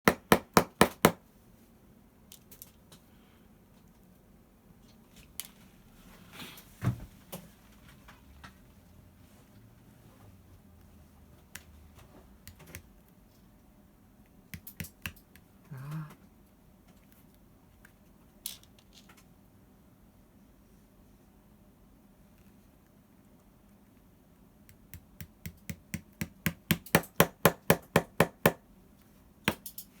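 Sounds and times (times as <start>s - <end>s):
tools tapping on leather: 24.7s - 28.6s.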